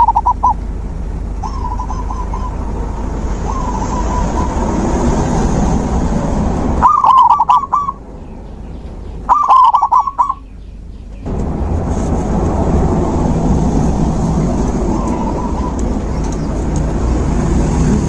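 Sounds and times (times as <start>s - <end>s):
dove cooing: 0.0s - 0.6s, 1.4s - 4.6s, 6.8s - 8.0s, 9.3s - 10.5s, 14.8s - 16.2s
low rumble: 0.0s - 6.9s, 10.4s - 18.0s.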